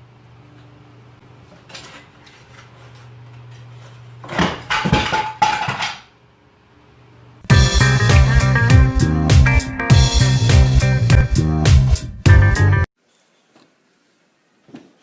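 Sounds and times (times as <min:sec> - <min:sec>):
dishes clattering: 0:04.2 - 0:06.1.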